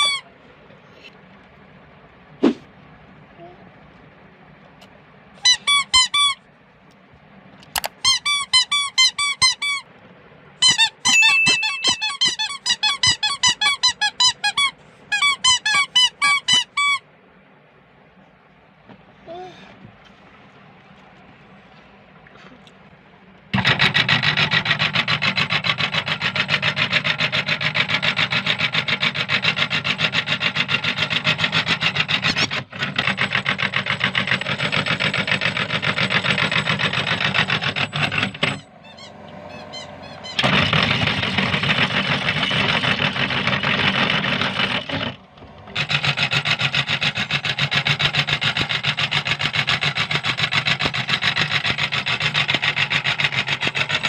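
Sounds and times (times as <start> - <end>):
meat grinder grinding plastic: 23.6 - 38.6, 40.4 - 54.0.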